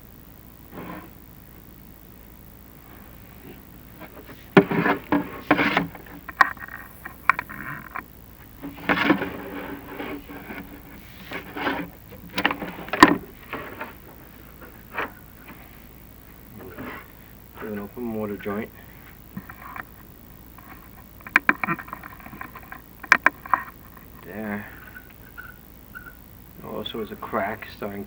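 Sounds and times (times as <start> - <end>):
push rods scraping in flue: 4.0 - 15.7
squeaky rubbing: 24.8 - 26.2.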